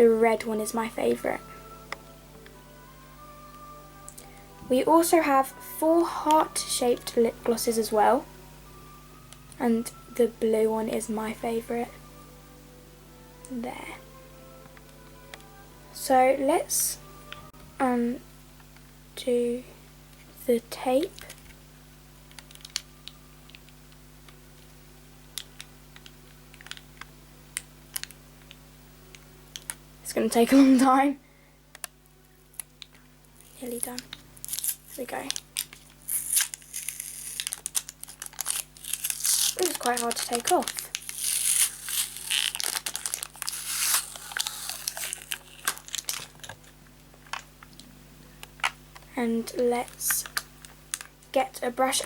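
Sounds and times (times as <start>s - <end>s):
packaging crinkling and rustling: 32.8s - 47.8s, 49.8s - 51.2s.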